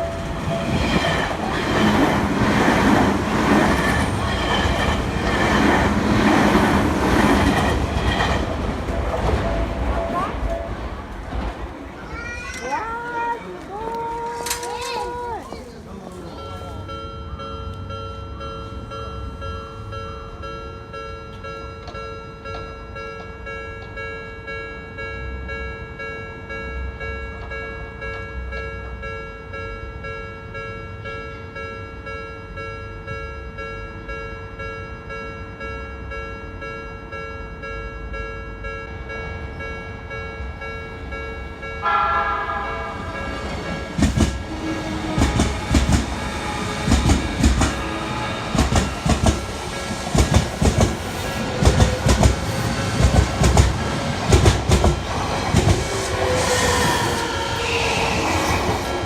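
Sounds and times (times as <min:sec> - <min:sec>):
level-crossing warning bell: 0:00.0 - 0:11.0, 0:12.5 - 0:59.0
train wheels clacking on rail joints: 0:00.0 - 0:12.8, 0:43.2 - 0:59.0
train rumble: 0:00.0 - 0:30.4, 0:37.0 - 0:59.0
train horn: 0:41.8 - 0:43.4, 0:44.4 - 0:47.0, 0:47.6 - 0:48.6, 0:55.8 - 0:58.7.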